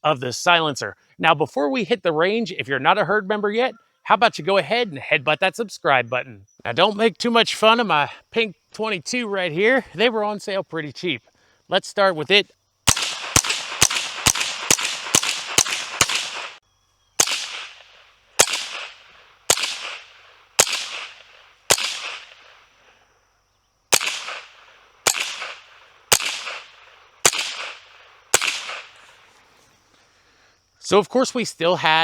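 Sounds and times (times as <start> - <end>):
suppressed rifle shots cracking: 12.9 - 16.6, 17.2 - 22.7, 23.9 - 29.3.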